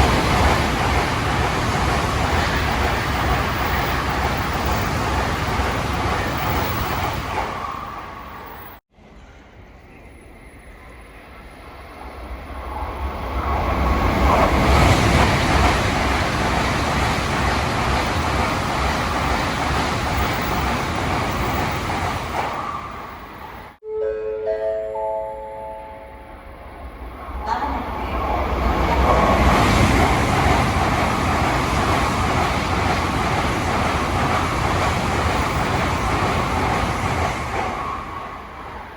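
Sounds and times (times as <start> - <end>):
train passing: 0.0 - 38.9
wheels rumbling over rail joints: 26.9 - 38.9.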